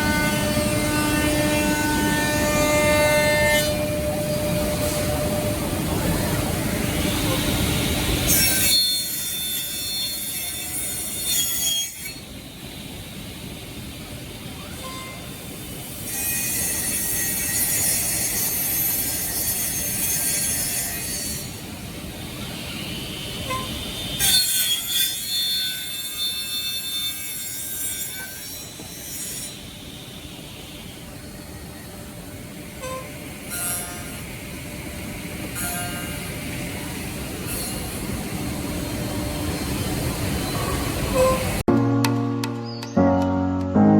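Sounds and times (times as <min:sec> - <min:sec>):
steady machine noise: 0:00.0 - 0:08.3.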